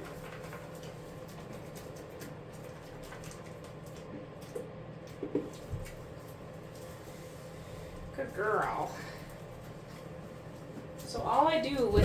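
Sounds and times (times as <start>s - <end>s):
steady low hum: 11.6s - 12.0s.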